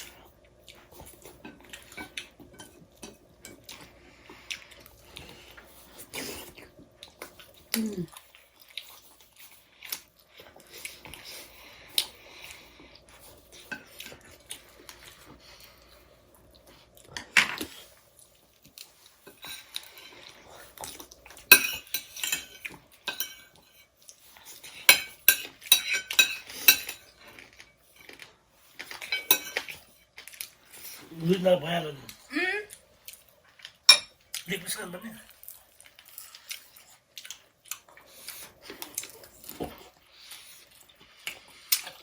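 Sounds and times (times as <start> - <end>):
cutlery clinking on plates: 21.4 - 23.8, 24.7 - 27.1, 28.9 - 29.8, 33.9 - 34.2.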